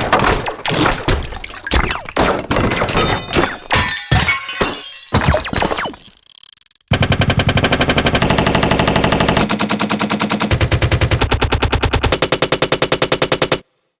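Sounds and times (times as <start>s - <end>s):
automatic gunfire: 6.9s - 13.6s.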